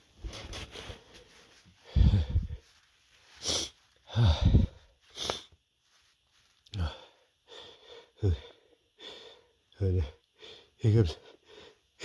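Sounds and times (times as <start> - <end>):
man gasping breaths: 1.8 - 2.6, 3.4 - 5.4, 6.7 - 9.6
man sniffing: 3.4 - 5.5.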